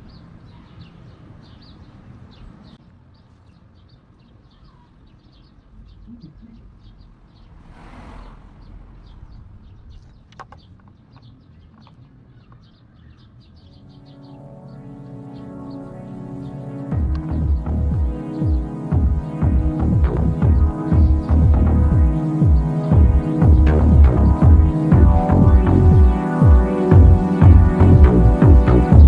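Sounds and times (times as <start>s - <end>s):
small birds chirping: 0.0s - 29.0s
low rumble: 6.7s - 10.8s, 16.9s - 18.2s, 18.9s - 29.0s
music: 13.8s - 29.0s.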